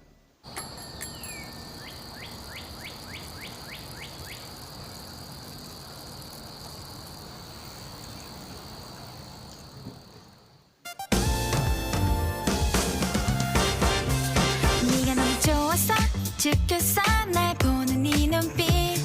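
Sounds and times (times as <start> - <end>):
high insect drone: 0.5 - 10.8.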